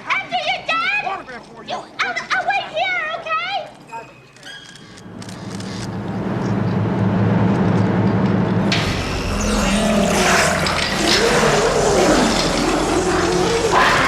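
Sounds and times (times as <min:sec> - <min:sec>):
low steady hum: 0:05.0 - 0:14.0.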